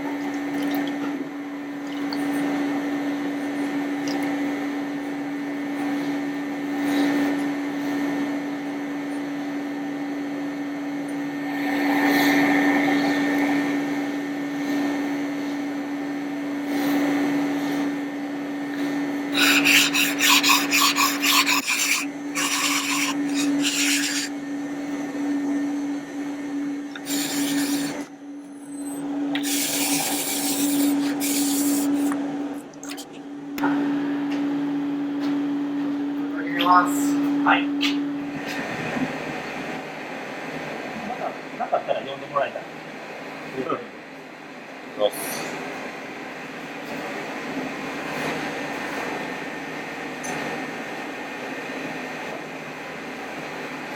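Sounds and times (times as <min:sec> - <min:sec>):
steady low hum: 0:08.4 - 0:45.0
knife scraping on whetstone: 0:19.4 - 0:24.3, 0:27.0 - 0:28.0, 0:29.4 - 0:32.2.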